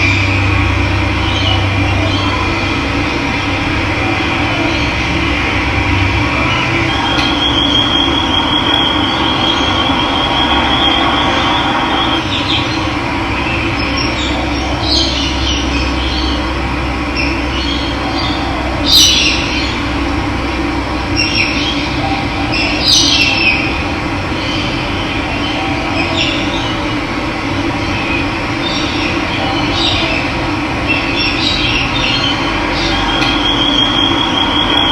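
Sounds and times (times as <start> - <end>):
birds chirping: 0.0 - 20.2, 21.0 - 34.9
thin high tone: 6.3 - 12.3.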